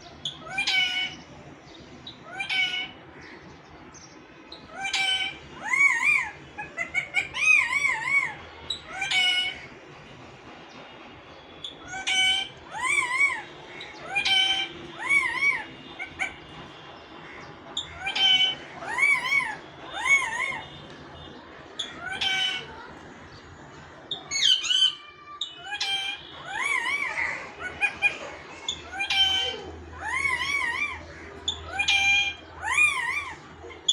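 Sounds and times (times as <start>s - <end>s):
parrot calling: 0.2s - 1.3s, 2.0s - 3.3s, 4.5s - 9.8s, 11.7s - 16.5s, 17.8s - 20.7s, 21.7s - 23.0s, 24.1s - 33.9s.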